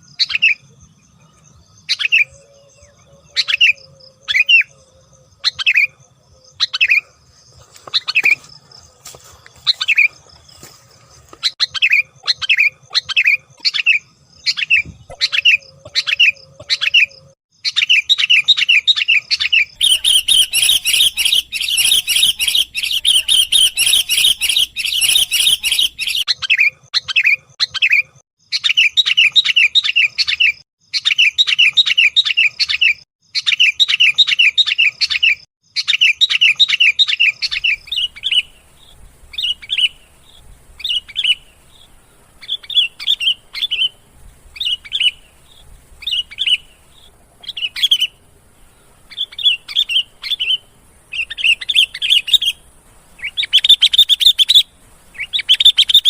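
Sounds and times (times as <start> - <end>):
bulbul chirping and chattering: 11.4 - 29.9, 35.8 - 56.0.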